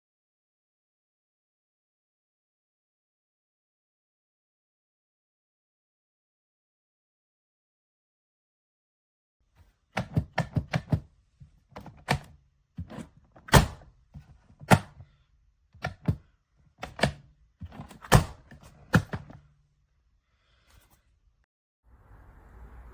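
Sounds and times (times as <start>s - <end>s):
knocks and thunks on a safe: 10.0s - 11.1s, 11.7s - 15.0s, 15.8s - 19.4s.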